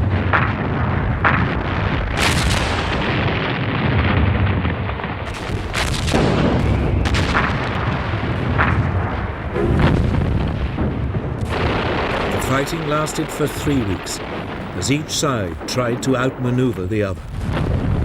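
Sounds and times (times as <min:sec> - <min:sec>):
artillery and gunfire reports: 0:00.0 - 0:18.0
continuous low rumble: 0:00.0 - 0:18.0.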